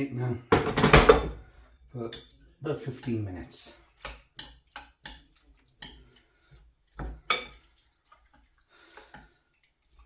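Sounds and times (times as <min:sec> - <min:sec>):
kitchenware clinking and knocking: 0:00.4 - 0:03.2.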